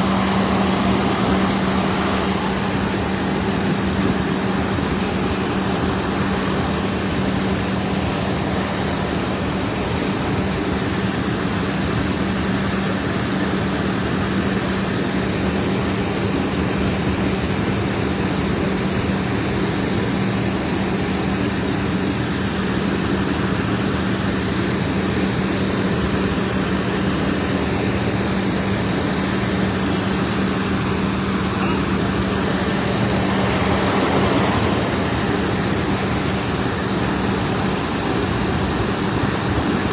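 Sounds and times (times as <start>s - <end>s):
loud rushing noise: 0.0s - 11.6s, 28.0s - 39.9s
engine humming steadily: 0.0s - 39.9s.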